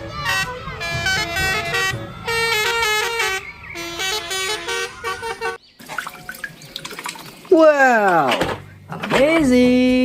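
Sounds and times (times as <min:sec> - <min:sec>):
bus horn playing a tune: 0:00.0 - 0:05.6.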